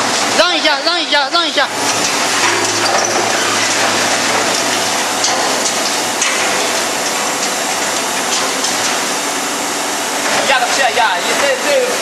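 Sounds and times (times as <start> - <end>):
low motor hum: 1.6 - 10.3.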